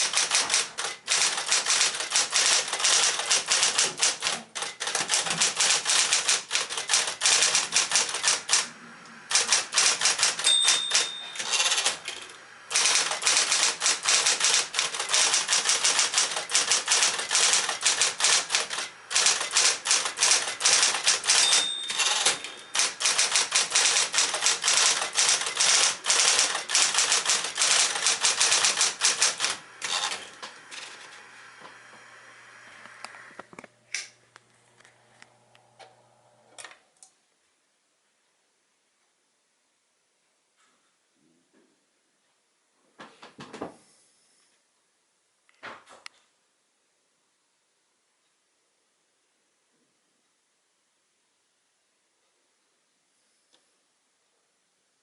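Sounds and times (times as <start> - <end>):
typewriter keystroke clicks: 0.0 - 8.7, 9.3 - 30.2
typewriter bell ring: 9.3 - 30.2.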